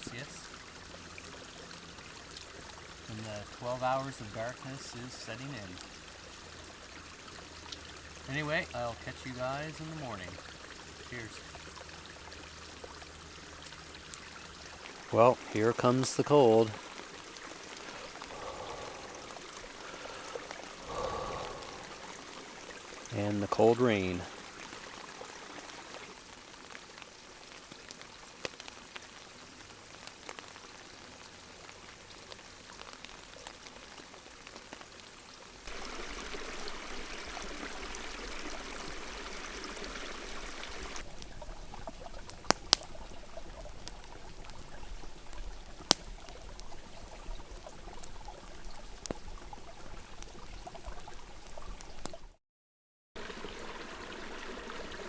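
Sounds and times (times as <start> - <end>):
rain falling in a forest: 0.0 - 52.4, 53.2 - 55.0
drops ticking: 13.6 - 24.4.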